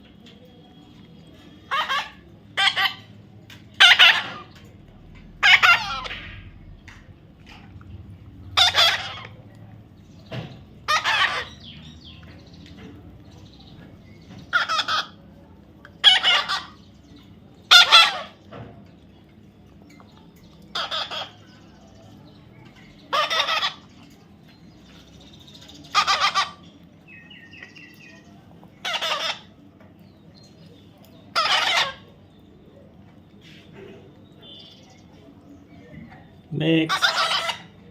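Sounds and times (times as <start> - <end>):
parrot squawking: 1.6 - 3.2, 3.8 - 4.7, 5.3 - 6.7, 8.4 - 9.4, 10.8 - 11.8, 14.5 - 15.2, 16.0 - 16.8, 17.7 - 18.4, 20.6 - 21.5, 23.1 - 23.9, 25.8 - 26.7, 28.8 - 29.5, 31.3 - 32.2, 36.8 - 37.9.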